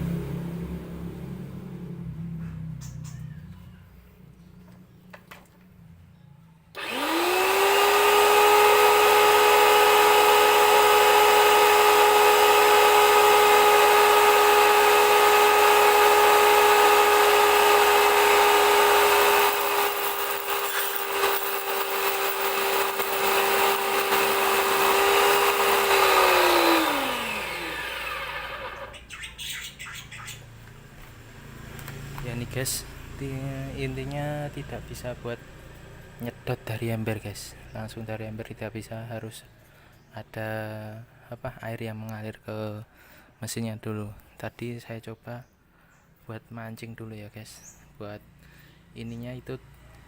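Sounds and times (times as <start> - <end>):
pressure washer motor whining: 6.8 - 29.0.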